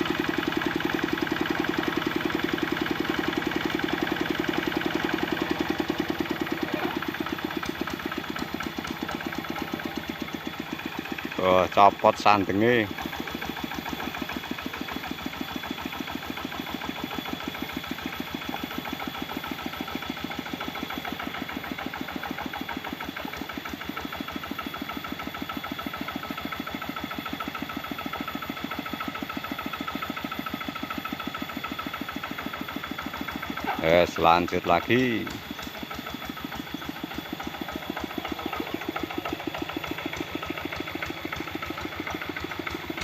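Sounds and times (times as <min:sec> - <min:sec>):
diesel engine chugging: 0:00.0 - 0:43.0.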